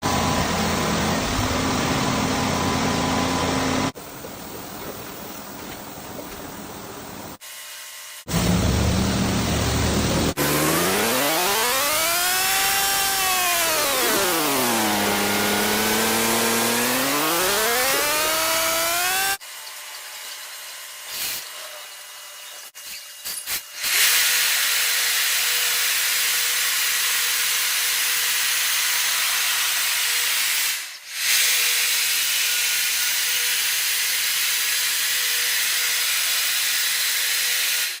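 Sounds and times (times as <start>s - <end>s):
car wash motor whine: 0.0s - 7.4s, 8.2s - 19.4s
car wash jets hissing: 8.3s - 12.9s.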